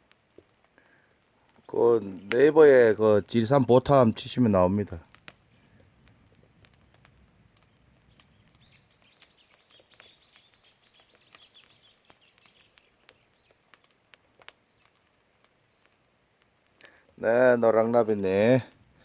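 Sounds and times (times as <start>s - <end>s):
bird chirping: 7.6s - 13.9s, 14.6s - 15.0s.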